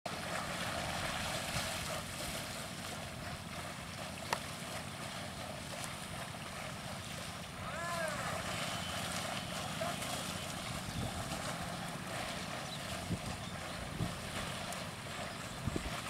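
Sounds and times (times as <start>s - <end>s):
wind on microphone: 10.6s - 16.0s.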